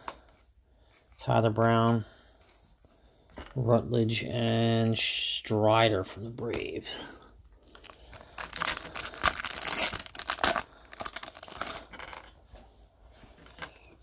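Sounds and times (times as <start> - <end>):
wrapper being torn and crinkled: 7.7 - 12.2.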